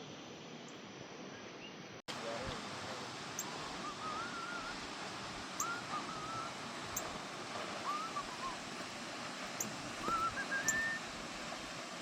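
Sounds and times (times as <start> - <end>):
outdoor background noise: 0.0 - 12.0
wavering whistled calls: 3.2 - 8.9, 9.5 - 11.4.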